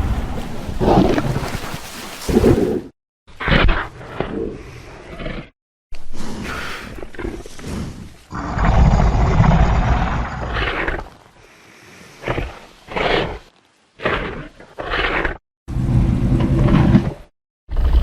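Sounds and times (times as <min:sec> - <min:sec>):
dinosaur roaring: 0:08.3 - 0:11.1.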